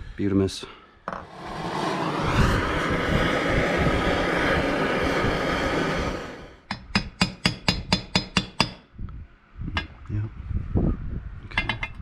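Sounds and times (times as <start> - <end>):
rushing blowing noise: 1.2 - 6.8
sharp taps on metal: 6.7 - 8.8.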